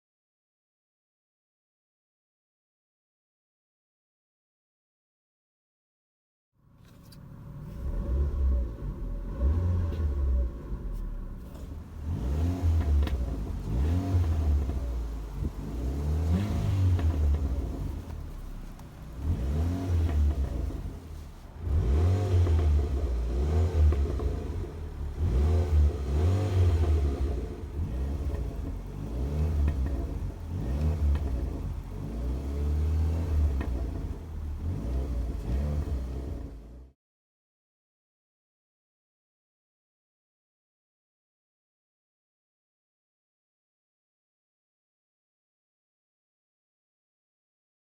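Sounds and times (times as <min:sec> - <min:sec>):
car engine revving: 0:07.3 - 0:36.9
exhaust pops and crackles: 0:09.9 - 0:36.7.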